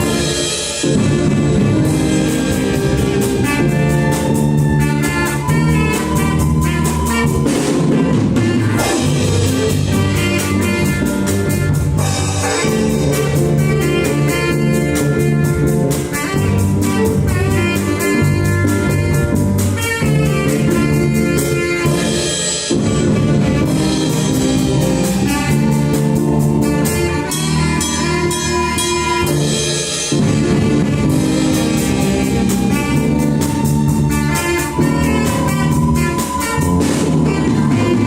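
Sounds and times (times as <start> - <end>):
drum kit steady beat: 0.0 - 38.0
held melody and bass notes: 0.0 - 38.0.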